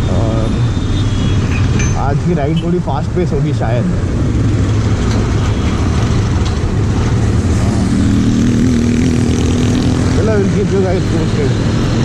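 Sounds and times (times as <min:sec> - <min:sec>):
wind and road rush: 0:00.0 - 0:12.0.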